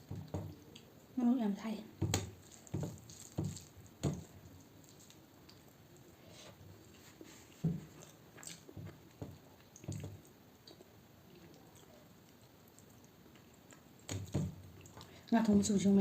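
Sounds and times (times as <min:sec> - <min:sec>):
wet chewing and mouth smacks: 0:02.2 - 0:06.1, 0:06.8 - 0:15.2.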